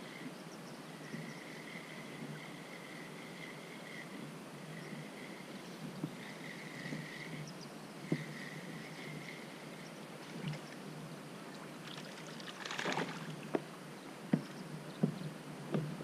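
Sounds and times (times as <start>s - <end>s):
water sounds: 0.9s - 13.8s
light knocks on boat: 14.3s - 16.0s.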